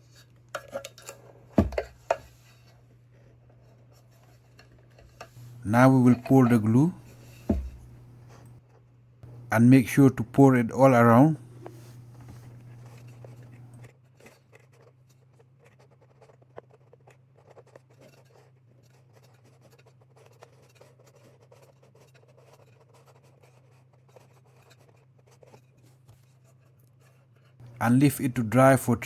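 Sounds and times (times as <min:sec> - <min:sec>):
soft hiss: 0:05.4 - 0:08.6, 0:09.3 - 0:13.8
steady low hum: 0:05.4 - 0:08.6, 0:09.2 - 0:13.9, 0:27.6 - 0:29.0
glue scratching on voice coil: 0:11.4 - 0:27.8.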